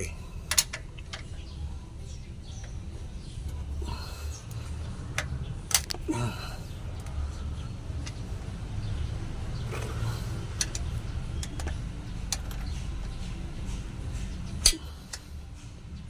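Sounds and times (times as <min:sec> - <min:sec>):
steady low rumble: 0:00.0 - 0:16.0
hand tools clinking on metal: 0:14.6 - 0:15.3.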